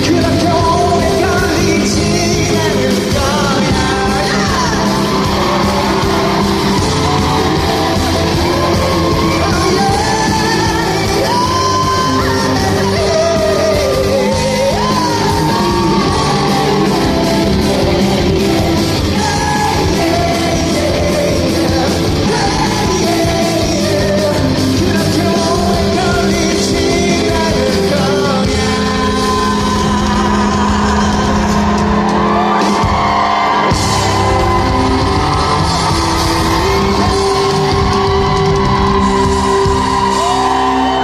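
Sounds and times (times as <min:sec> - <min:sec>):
person singing: 0:00.0 - 0:41.0
rock band playing live: 0:00.0 - 0:41.0.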